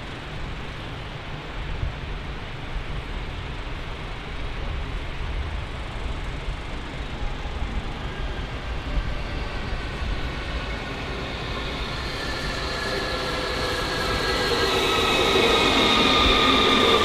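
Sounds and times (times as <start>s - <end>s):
train approaching: 0.0s - 17.0s
high whining tones: 8.0s - 17.0s.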